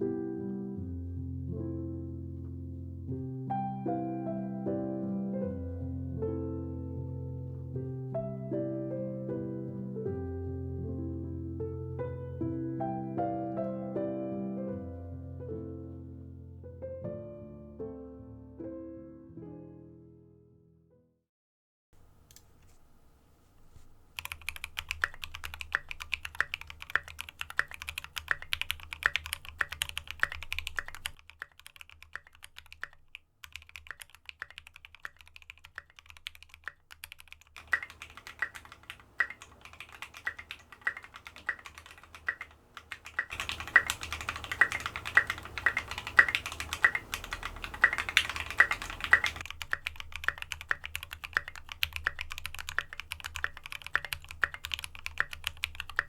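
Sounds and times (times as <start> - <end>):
mechanical keyboard typing: 24.2 - 56.0.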